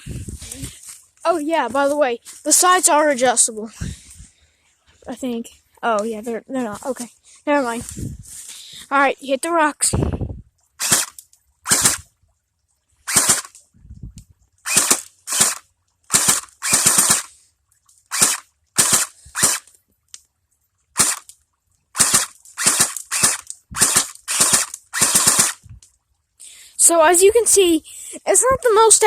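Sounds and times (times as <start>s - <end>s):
airsoft gun shots: 13.1s - 13.5s, 14.7s - 17.3s, 22.0s - 25.6s.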